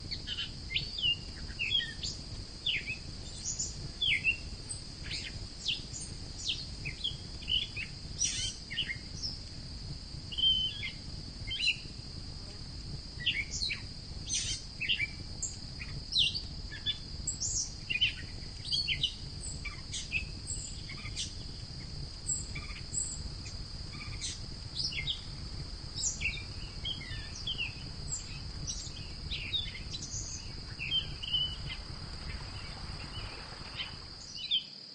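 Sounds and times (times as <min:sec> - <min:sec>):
insect drone: 0:00.0 - 0:34.9
birds chirping: 0:24.1 - 0:34.7.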